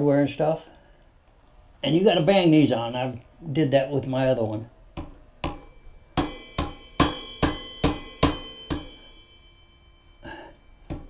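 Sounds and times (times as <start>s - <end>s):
sharp ringing hammer strikes: 5.0s - 11.0s.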